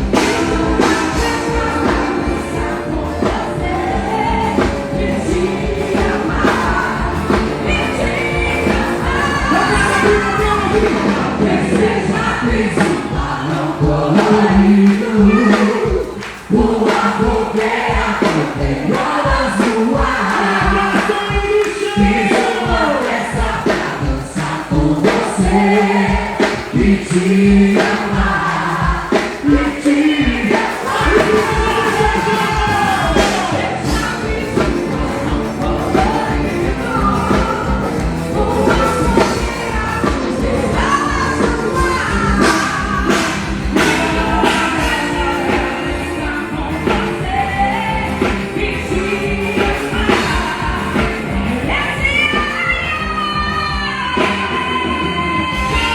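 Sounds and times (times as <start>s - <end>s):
band playing steady beat: 0.0s - 55.9s
many voices singing: 0.0s - 55.9s.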